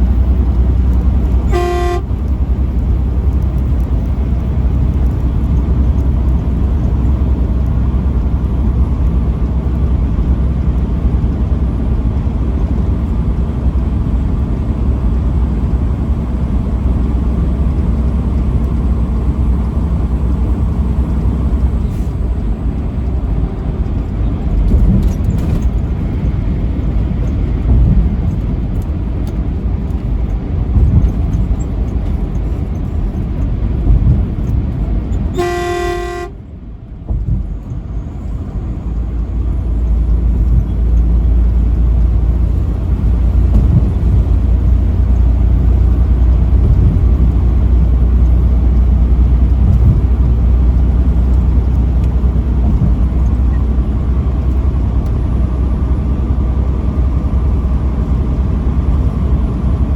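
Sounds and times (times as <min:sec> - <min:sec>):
truck rumbling down road: 0:00.0 - 0:59.9
truck horn blast: 0:01.4 - 0:02.2, 0:35.3 - 0:36.4.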